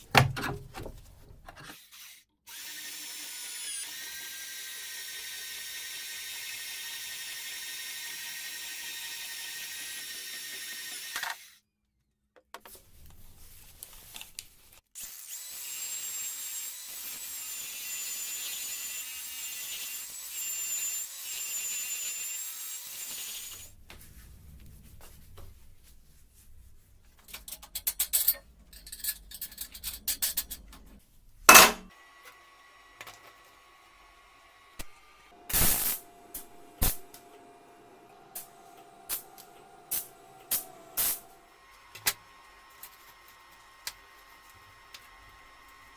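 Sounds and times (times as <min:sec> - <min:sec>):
electric power tool whining: 0:31.5 - 0:45.9.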